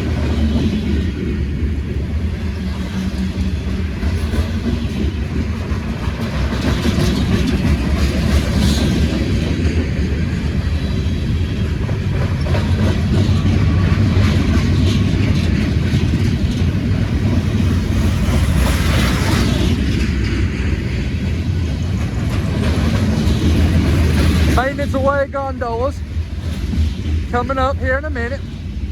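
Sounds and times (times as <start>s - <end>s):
freight train rumbling: 0.0s - 28.9s
train wheels clattering: 0.0s - 28.9s.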